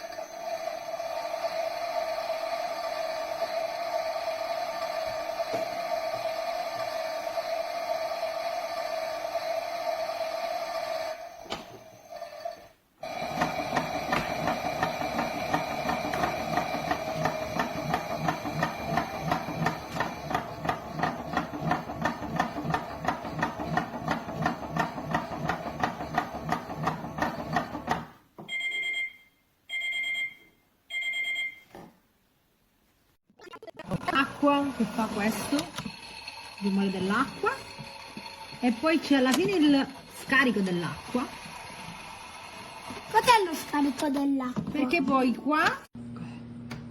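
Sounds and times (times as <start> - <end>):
toy electronic churning pulse: 0.0 - 24.1, 33.3 - 44.0
electronic beeps: 33.3 - 34.3.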